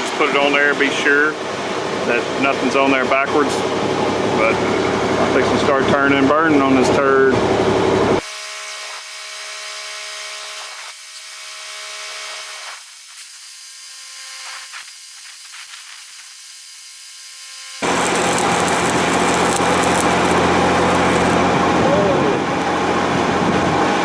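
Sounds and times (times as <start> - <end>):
welding hiss: 8.2 - 21.4
loud crackling welding hiss: 8.2 - 21.5.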